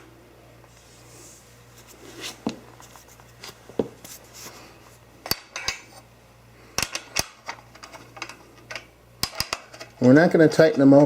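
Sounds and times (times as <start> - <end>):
metal parts clicking and knocking: 6.8 - 11.0.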